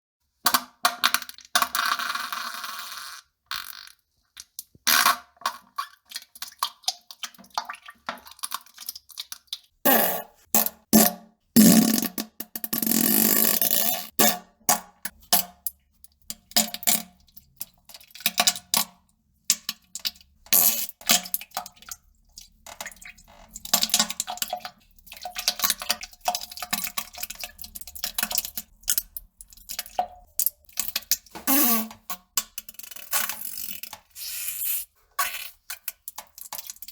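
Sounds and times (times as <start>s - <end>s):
farting sounds: 9.9s - 14.1s, 31.5s - 32.0s.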